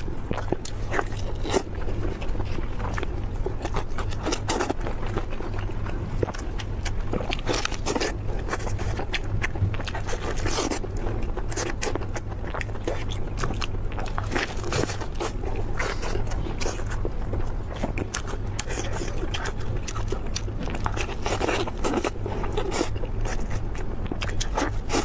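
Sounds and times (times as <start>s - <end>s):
low hum: 0.0s - 25.0s
person chewing meat: 0.0s - 25.0s.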